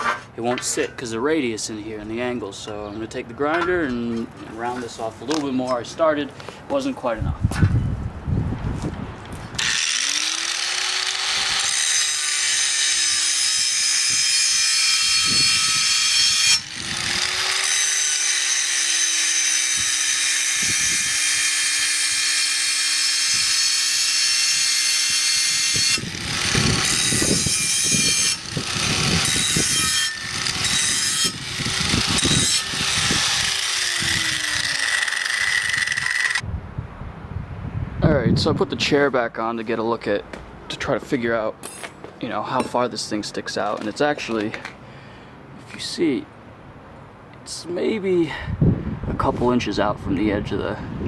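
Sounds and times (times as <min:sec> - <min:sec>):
angle grinder grinding metal: 0:09.6 - 0:36.4.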